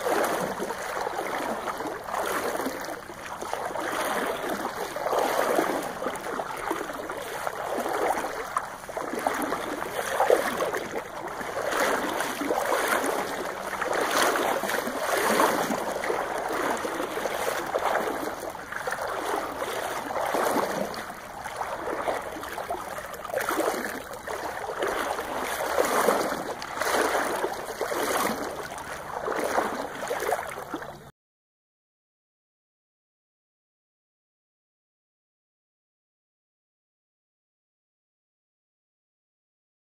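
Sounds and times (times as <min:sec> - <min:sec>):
river water sloshing and splashing: 0:00.0 - 0:31.1.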